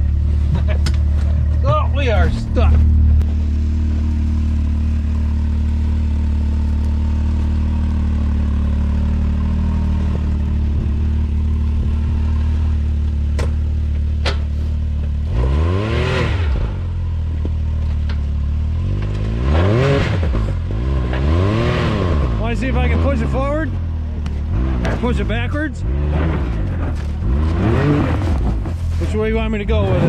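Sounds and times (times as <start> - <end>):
engine idling: 0.0 - 15.4
engine revving: 0.0 - 17.3, 18.5 - 30.0.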